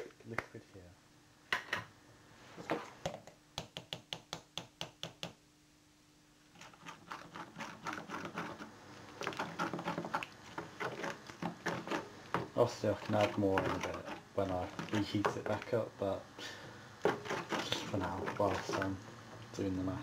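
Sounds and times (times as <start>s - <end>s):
spoon scraping: 6.5s - 15.8s, 17.0s - 19.0s.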